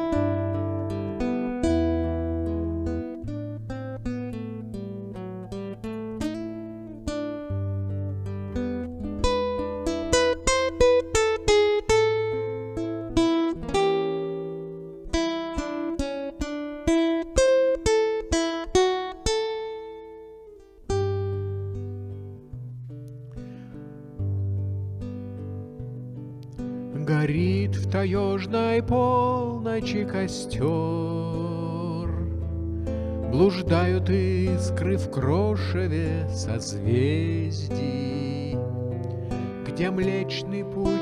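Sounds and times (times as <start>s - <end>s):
acoustic guitar melody: 0.0s - 41.0s.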